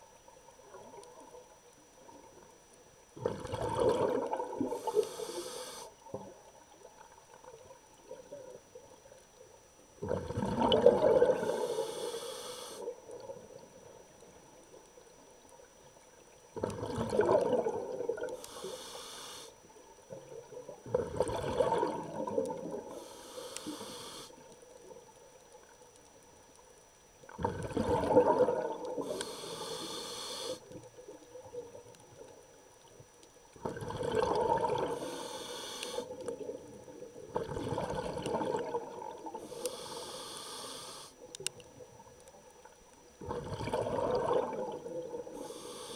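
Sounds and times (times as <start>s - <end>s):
diver breathing through regulator: 4.6s - 6.0s, 11.1s - 13.0s, 18.4s - 19.6s, 22.8s - 24.4s, 29.0s - 30.8s, 33.7s - 36.3s, 39.3s - 41.2s, 45.3s - 45.9s.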